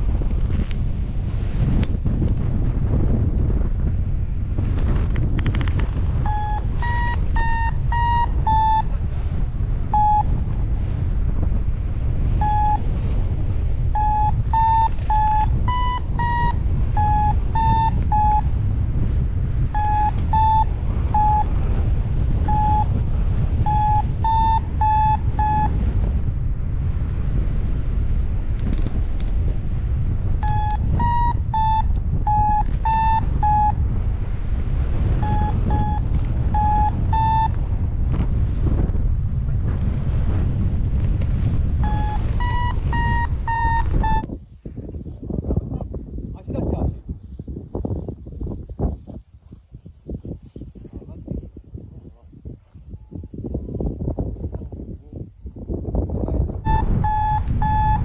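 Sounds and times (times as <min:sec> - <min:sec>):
wind noise on microphone: 0:00.0 - 0:58.0
variometer beeps: 0:06.2 - 0:10.7, 0:12.3 - 0:13.1, 0:13.8 - 0:18.7, 0:19.6 - 0:25.9, 0:30.4 - 0:33.9, 0:35.1 - 0:37.7, 0:41.8 - 0:44.3, 0:56.6 - 0:58.0.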